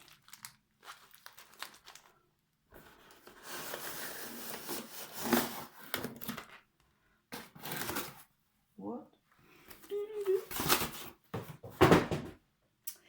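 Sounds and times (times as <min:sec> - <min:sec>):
sharp packaging crackle: 0:00.0 - 0:02.4, 0:07.4 - 0:08.3
packaging rustling and tearing: 0:00.0 - 0:06.7, 0:07.4 - 0:08.3, 0:10.2 - 0:11.2.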